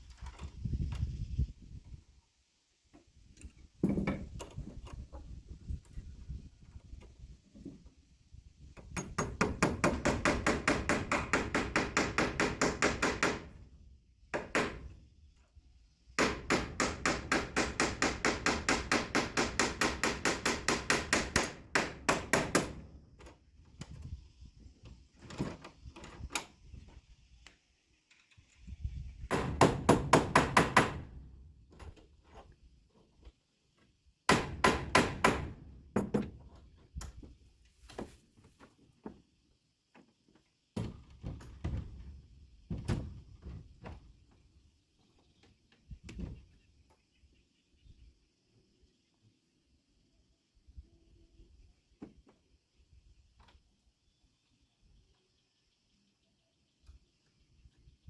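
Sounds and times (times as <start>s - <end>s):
rapid hammering on wood: 9.0s - 13.5s, 16.2s - 22.8s, 29.3s - 31.0s, 34.3s - 36.2s.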